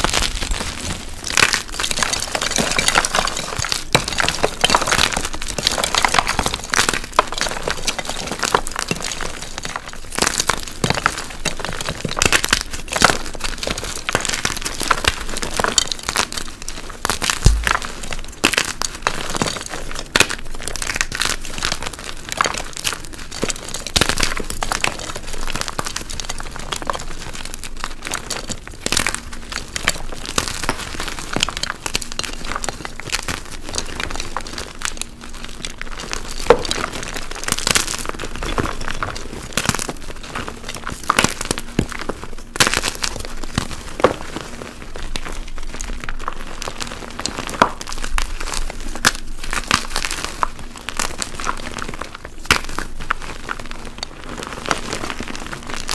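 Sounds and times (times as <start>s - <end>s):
chalk blocks crunching: 17.3s - 19.5s.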